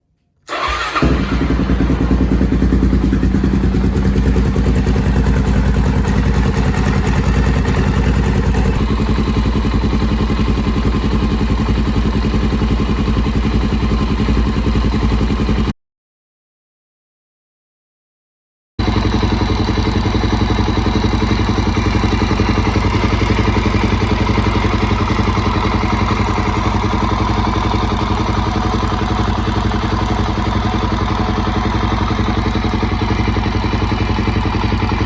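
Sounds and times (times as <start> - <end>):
motorcycle engine running with ticking: 0.6 - 15.7, 18.8 - 35.0.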